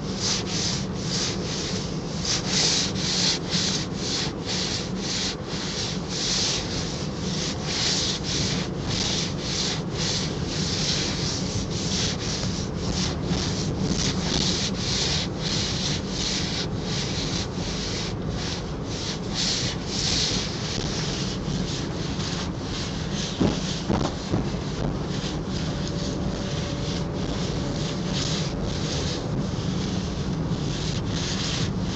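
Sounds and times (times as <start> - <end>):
low car hum: 9.9 - 31.9.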